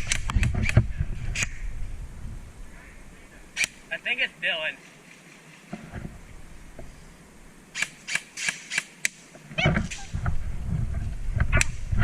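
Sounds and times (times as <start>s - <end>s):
low rumbling noise: 0.0s - 4.0s, 5.7s - 7.7s, 9.4s - 12.0s.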